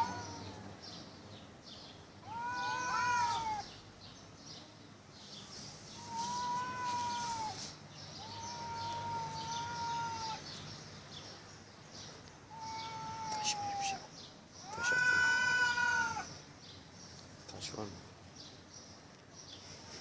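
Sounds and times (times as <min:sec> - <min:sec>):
cats yowling: 0:00.0 - 0:00.7, 0:02.2 - 0:03.8, 0:06.0 - 0:10.5, 0:12.5 - 0:16.3.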